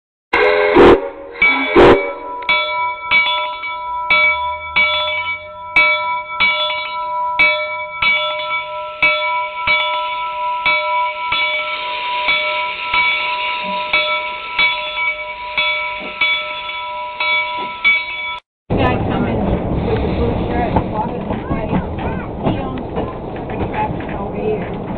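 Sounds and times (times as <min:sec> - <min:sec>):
steam locomotive bell ringing: 0:00.4 - 0:19.4.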